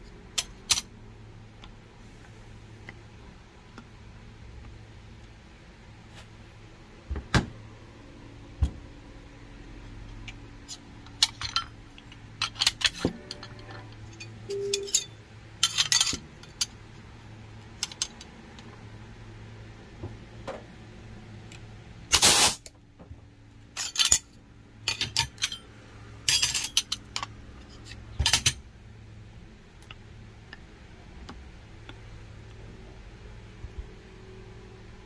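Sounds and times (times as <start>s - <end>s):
metal parts and tools clinking: 0.4s - 0.9s, 11.0s - 16.8s, 23.7s - 28.6s.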